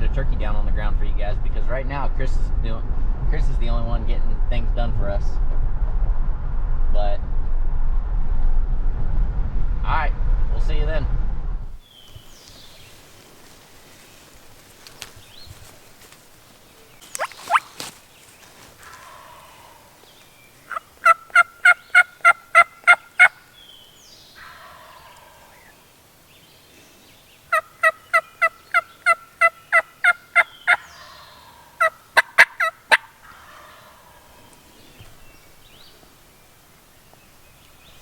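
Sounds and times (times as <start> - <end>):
turkey yelping: 17.0 - 17.9, 20.7 - 23.4, 24.4 - 25.6, 27.5 - 34.5.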